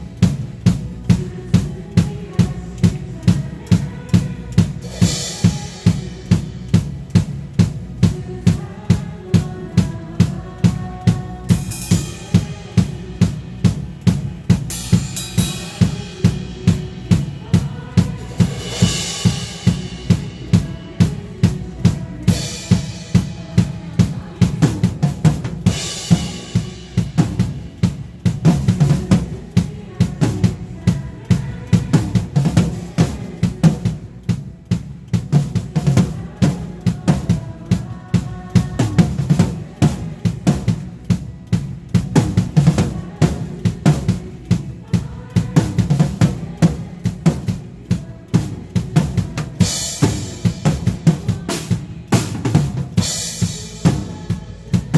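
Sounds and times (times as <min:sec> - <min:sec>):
backing music: 0:00.0 - 0:54.9
drum kit beat: 0:00.0 - 0:54.9
cymbal crashes: 0:11.5 - 0:13.9, 0:18.3 - 0:20.9.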